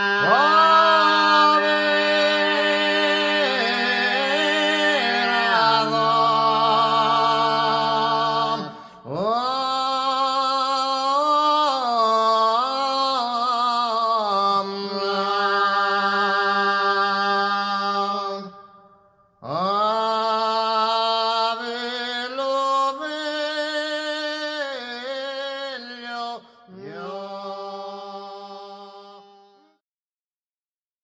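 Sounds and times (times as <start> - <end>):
ornamented singing voice: 0.0 - 29.8.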